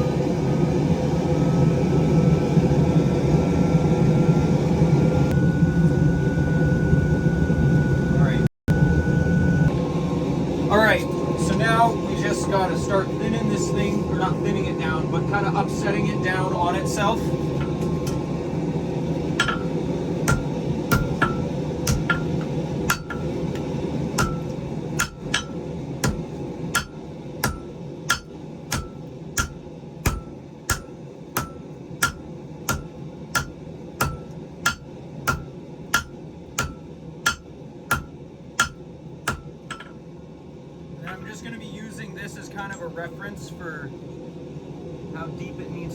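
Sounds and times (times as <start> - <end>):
hammer blows on iron on anvil: 19.4 - 40.0.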